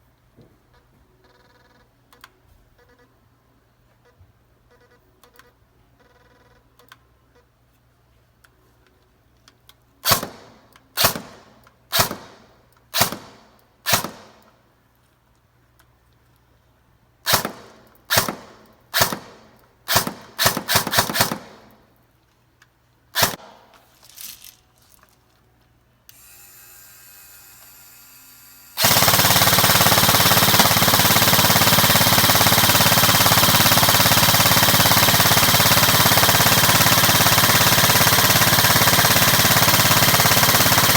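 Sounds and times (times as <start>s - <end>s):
airsoft gun firing shots: 10.0s - 14.6s, 17.3s - 21.9s, 23.2s - 23.9s, 28.8s - 40.9s.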